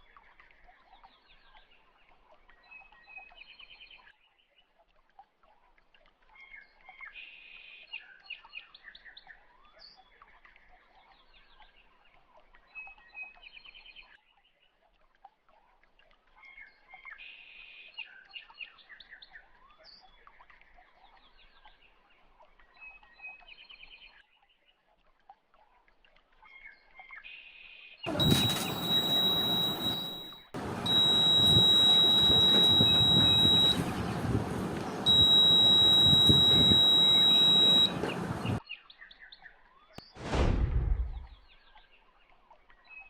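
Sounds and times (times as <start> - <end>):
faint birds chirping: 28.1 - 38.6.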